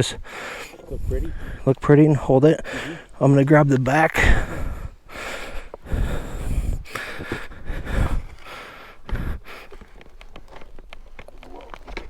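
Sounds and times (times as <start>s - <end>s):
person breathing hard and straining: 0.0s - 1.7s, 2.6s - 3.2s, 4.2s - 10.1s.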